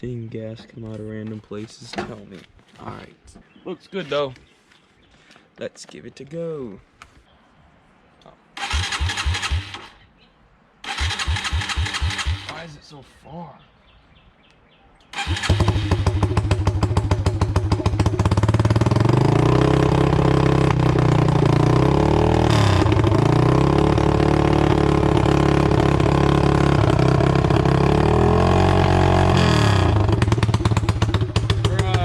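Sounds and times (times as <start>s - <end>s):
unmuffled motorcycle engine running: 15.3s - 32.0s.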